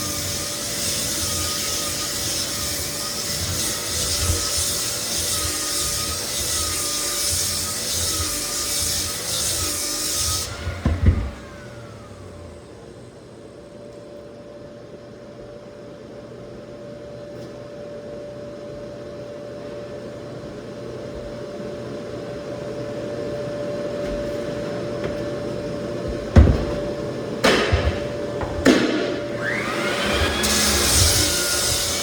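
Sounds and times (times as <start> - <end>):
floor sander motor humming: 0.0 - 14.1, 22.3 - 32.0
sharp knocks: 26.4 - 29.2.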